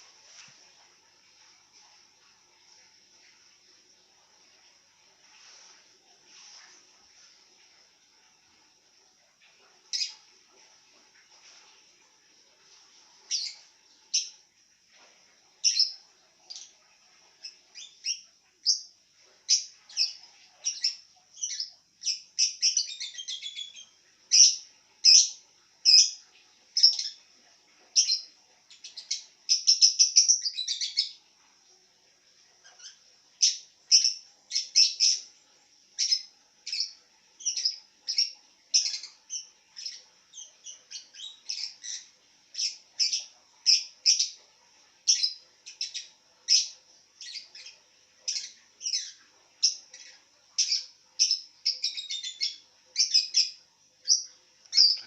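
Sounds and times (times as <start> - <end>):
lovebird chirping: 9.9 - 10.2, 13.3 - 14.3, 19.5 - 26.2, 26.8 - 27.2, 27.9 - 31.2, 36.0 - 44.4, 45.0 - 55.0.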